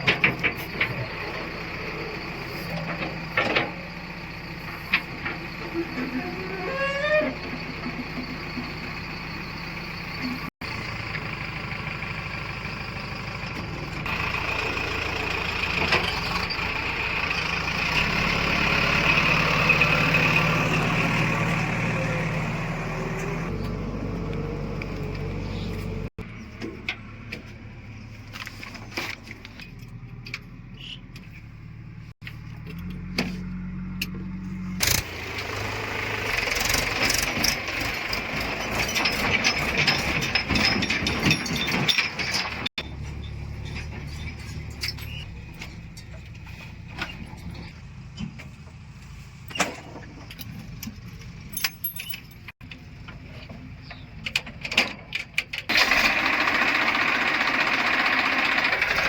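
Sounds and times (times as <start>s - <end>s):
metallic clanks and rattles: 0.0s - 9.3s, 36.4s - 48.7s, 49.5s - 56.0s
heavy diesel machinery running: 0.0s - 29.2s, 30.8s - 51.6s, 55.3s - 59.0s.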